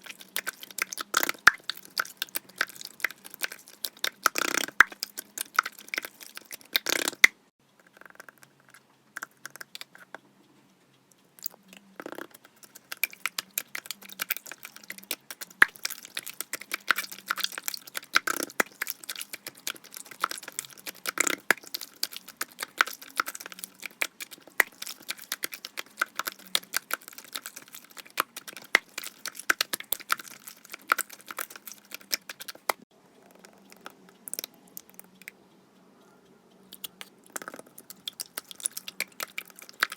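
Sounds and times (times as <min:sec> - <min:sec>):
slime crackling and popping: 0:00.0 - 0:07.4, 0:12.2 - 0:32.8, 0:36.8 - 0:39.9.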